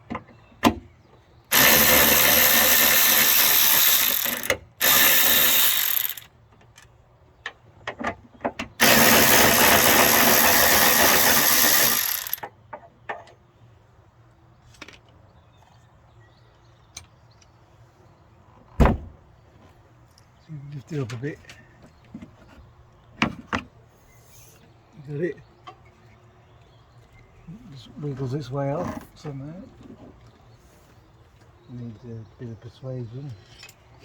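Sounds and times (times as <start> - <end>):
handheld power tool running: 1.5 - 6.3, 8.8 - 12.5.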